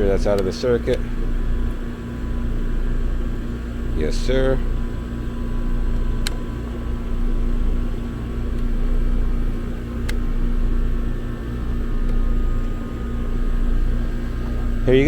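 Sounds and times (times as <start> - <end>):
compressor humming: 0.0 - 15.0
fan whooshing: 0.0 - 15.0
sharp click: 6.2 - 6.4, 10.0 - 10.2.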